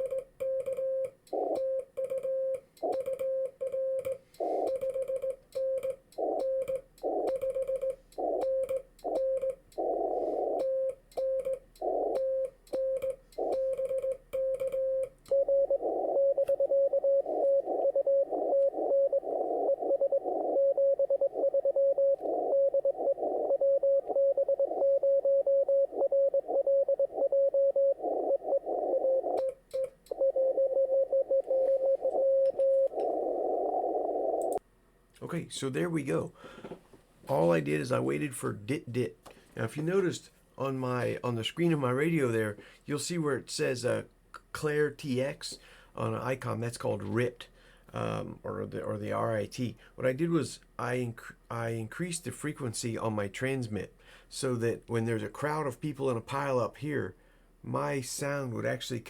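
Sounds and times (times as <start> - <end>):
morse code tone beeping: 0.0 - 32.9.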